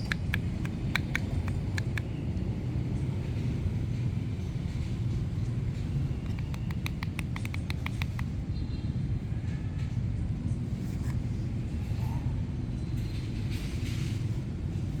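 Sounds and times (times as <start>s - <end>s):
street traffic rumble: 0.0s - 15.0s
light ticks: 6.2s - 8.3s.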